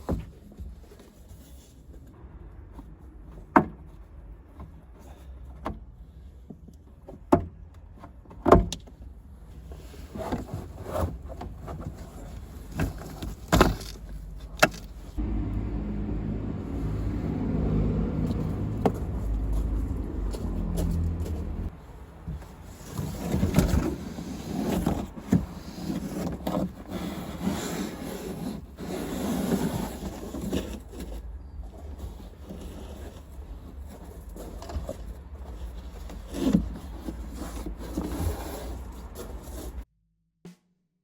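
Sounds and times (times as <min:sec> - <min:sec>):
steady low rumble: 0:15.0 - 0:21.8.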